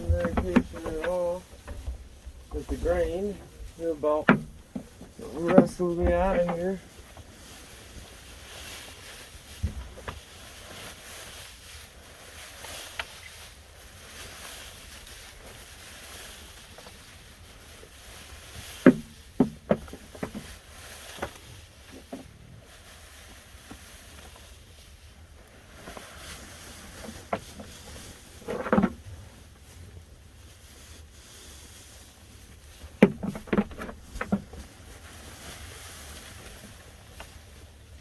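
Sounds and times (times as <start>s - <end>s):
sharp knocks and clatters: 0.0s - 6.9s, 18.6s - 22.3s, 27.0s - 29.1s, 33.0s - 34.7s
outdoor background noise: 0.0s - 38.0s.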